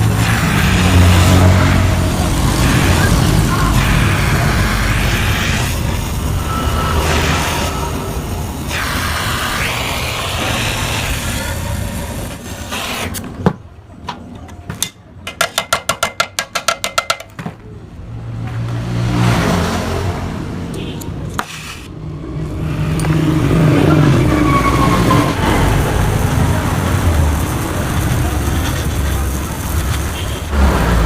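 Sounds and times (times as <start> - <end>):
two-stroke motorcycle engine revving: 0.0 - 6.0.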